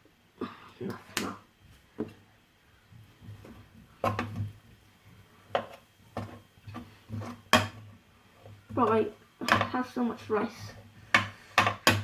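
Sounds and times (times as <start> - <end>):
utensil scraping a pan: 5.4 - 12.0.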